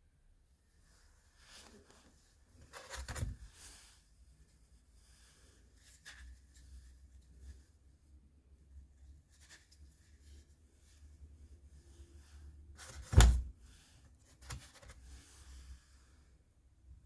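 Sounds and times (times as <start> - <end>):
sharp thump with scrape: 12.8 - 13.5.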